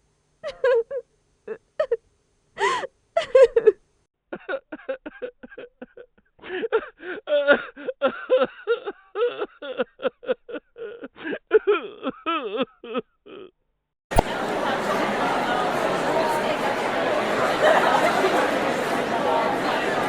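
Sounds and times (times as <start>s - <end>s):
woman sobbing: 0.4s - 2.0s, 2.6s - 13.6s.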